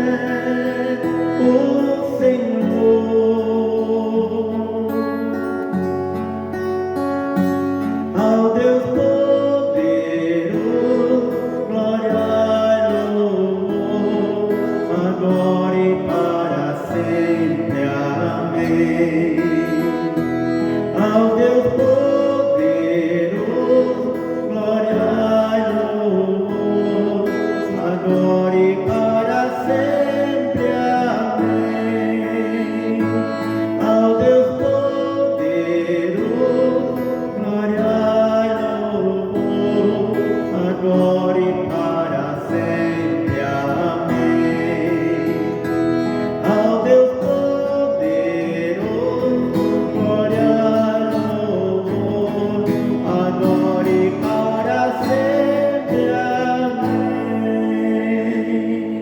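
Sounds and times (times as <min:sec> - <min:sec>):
worship song with guitar and singing: 0:00.0 - 0:59.0.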